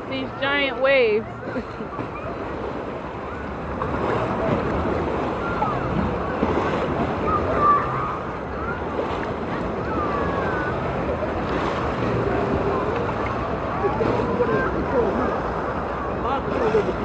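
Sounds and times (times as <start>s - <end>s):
water churning and splashing: 0.0s - 17.0s
distant shouts and cries: 5.2s - 9.2s, 9.8s - 11.1s.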